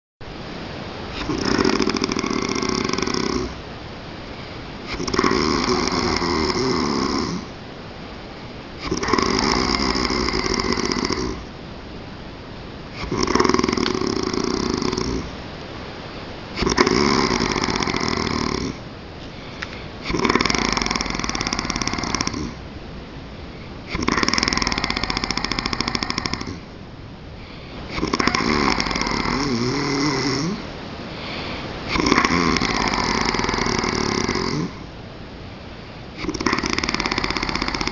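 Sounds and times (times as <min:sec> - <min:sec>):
quiet breathing: 0:00.8 - 0:11.7, 0:12.4 - 0:37.9
man snoring: 0:01.2 - 0:03.6, 0:04.9 - 0:07.6, 0:08.8 - 0:11.5, 0:13.0 - 0:15.3, 0:16.6 - 0:18.8, 0:19.7 - 0:22.6, 0:23.9 - 0:26.7, 0:27.5 - 0:34.9, 0:36.2 - 0:37.9.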